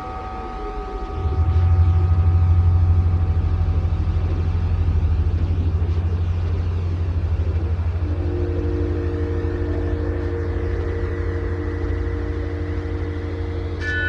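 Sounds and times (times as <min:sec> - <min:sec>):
deep pulsing rumble with hiss: 0:00.0 - 0:14.0
low drone chord: 0:00.0 - 0:14.0
high bell-like ringing: 0:09.7 - 0:14.0.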